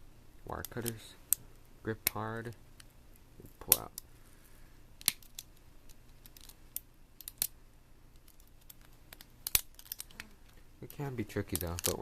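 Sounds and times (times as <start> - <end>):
wire cutters snapping plastic: 11.5 - 12.0.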